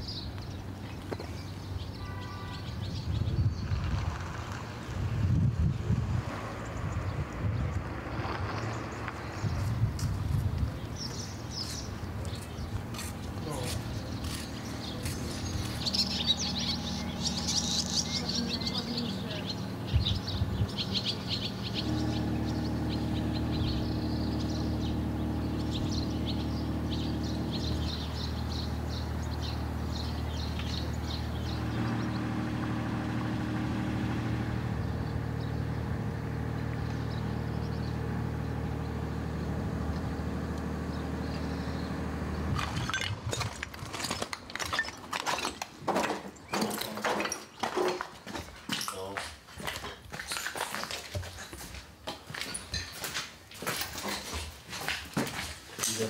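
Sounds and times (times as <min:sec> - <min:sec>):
birds chirping: 0:00.0 - 0:05.0, 0:05.7 - 0:53.2
engine running: 0:03.6 - 0:46.2
knocks and clatters: 0:42.6 - 0:56.0.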